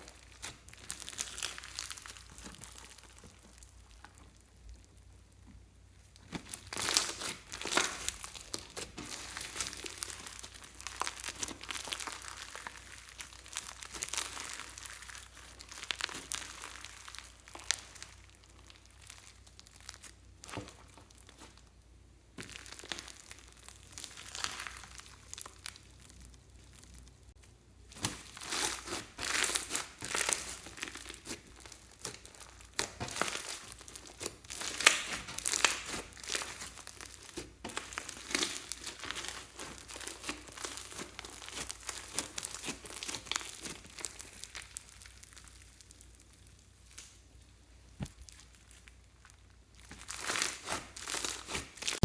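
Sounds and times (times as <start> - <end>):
slime crackling and popping: 0.0 - 52.0.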